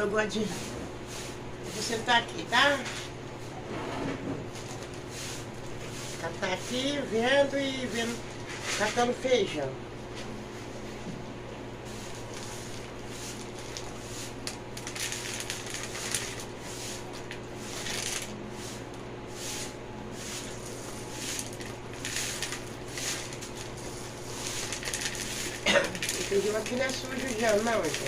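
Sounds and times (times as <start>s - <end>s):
dry beans rattling by hand: 14.8s - 16.5s, 17.7s - 18.3s, 21.1s - 28.0s.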